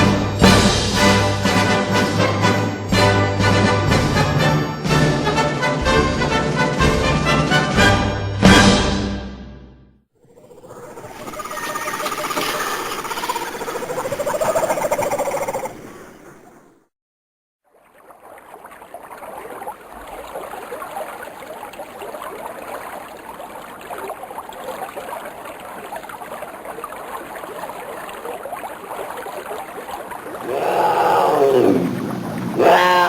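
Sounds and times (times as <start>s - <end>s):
rushing water ambience: 10.2s - 16.9s, 17.6s - 33.0s
animal roars: 30.4s - 33.0s.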